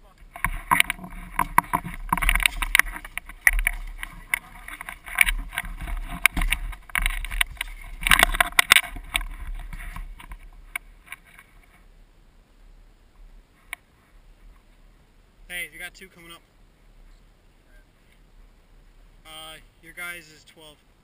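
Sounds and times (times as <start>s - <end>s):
camera handling rustles and knocks: 0.2s - 11.8s.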